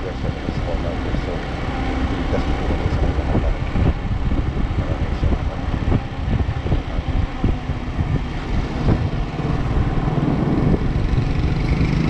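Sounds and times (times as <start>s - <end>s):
motorcycle engine running: 0.0s - 12.0s
road and wind rumble: 0.0s - 12.0s.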